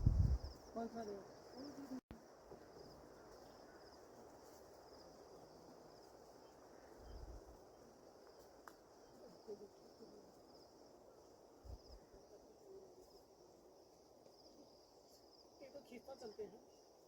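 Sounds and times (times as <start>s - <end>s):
soft low rumbles: 0.0s - 0.6s
insects chirping trill: 0.0s - 17.0s.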